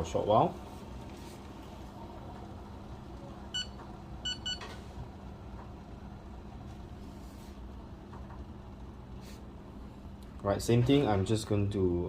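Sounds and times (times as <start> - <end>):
short electronic beeps: 3.6 - 4.6.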